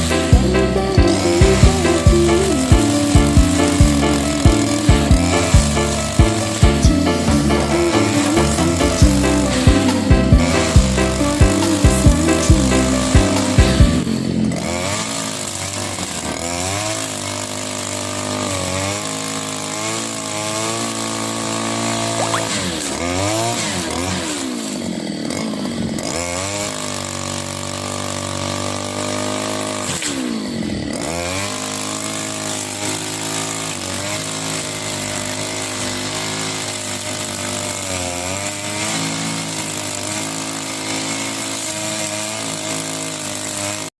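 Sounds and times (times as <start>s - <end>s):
brush cutter engine revving high: 0.0s - 44.0s.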